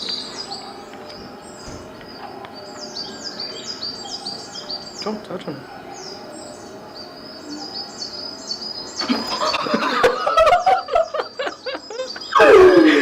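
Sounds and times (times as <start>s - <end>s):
bird chirping: 0.0s - 13.0s
loud falling cry: 12.3s - 13.0s.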